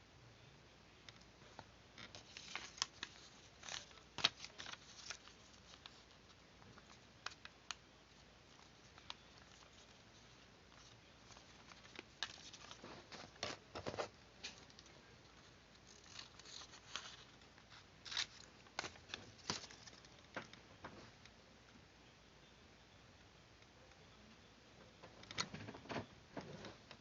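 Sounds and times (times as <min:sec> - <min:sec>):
paper rustling: 0:01.5 - 0:07.5, 0:08.1 - 0:20.4
paper clicks: 0:02.0 - 0:06.1.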